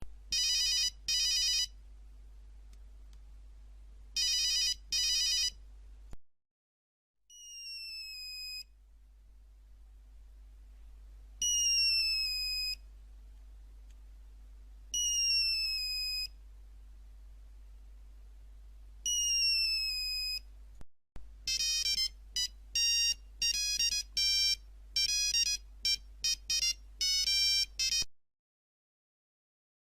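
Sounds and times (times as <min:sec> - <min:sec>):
beeping ringtone melody: 0:00.3 - 0:01.7, 0:04.2 - 0:05.6, 0:21.5 - 0:28.1
descending electronic chirp ringtone: 0:00.3 - 0:01.7, 0:04.2 - 0:05.6, 0:07.3 - 0:08.7, 0:11.4 - 0:12.8, 0:15.0 - 0:16.3, 0:19.1 - 0:20.4, 0:21.5 - 0:28.1.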